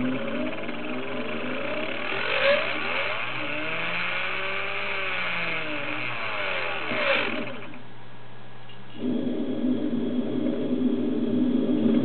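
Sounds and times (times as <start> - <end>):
electric motor whine: 0.0 - 7.8.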